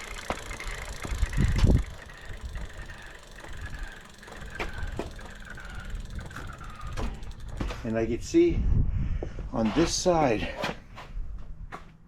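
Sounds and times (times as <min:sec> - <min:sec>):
chain slapping against tyre: 0:00.0 - 0:08.1
bicycle drivetrain clicking and whining: 0:00.0 - 0:08.5.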